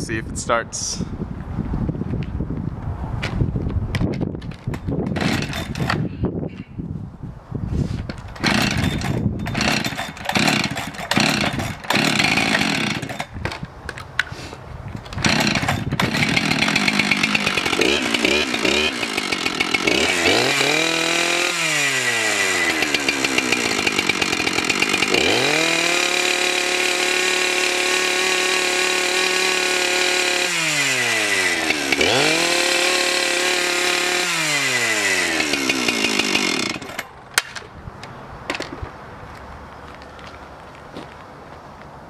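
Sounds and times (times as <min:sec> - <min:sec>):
chainsaw revving and idling: 0:05.1 - 0:06.0, 0:08.4 - 0:13.4, 0:15.2 - 0:37.1.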